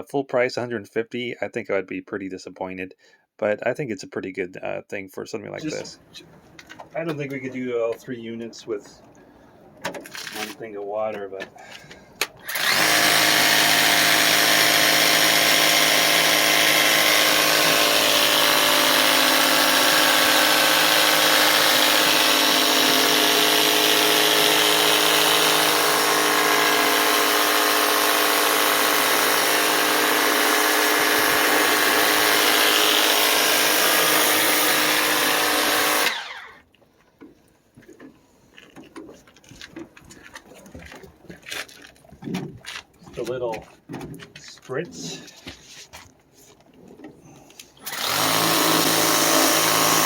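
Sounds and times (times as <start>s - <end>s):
pump motor humming: 12.4s - 36.5s.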